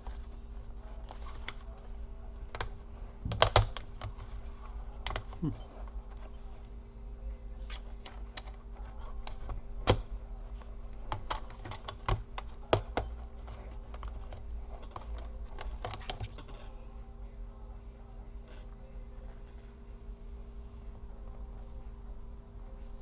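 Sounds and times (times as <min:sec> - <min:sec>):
sharp plastic snaps: 0:02.5 - 0:04.2.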